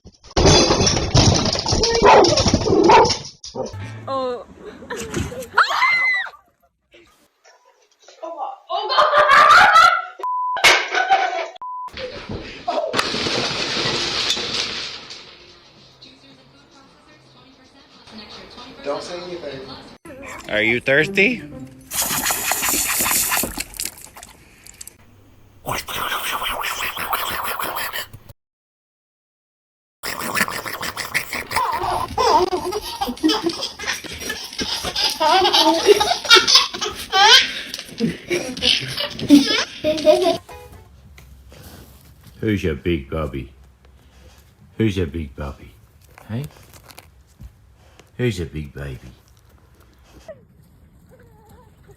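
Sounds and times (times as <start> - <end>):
person speaking: 20.1 - 23.4, 25.6 - 28.2
person laughing: 31.1 - 40.4.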